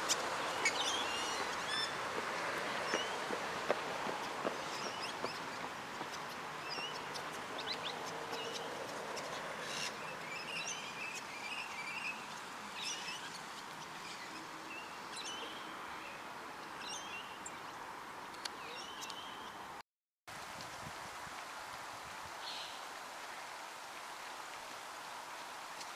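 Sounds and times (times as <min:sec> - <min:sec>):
birds chirping and trilling: 0:00.0 - 0:02.0
steady background hiss: 0:00.0 - 0:19.8, 0:20.4 - 0:25.9.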